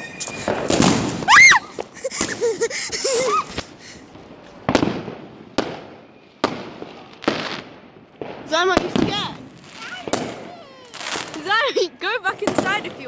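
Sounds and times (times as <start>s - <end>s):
fireworks bangs with echo: 0.0s - 1.3s, 4.6s - 13.0s
fireworks popping and crackling: 0.0s - 13.0s.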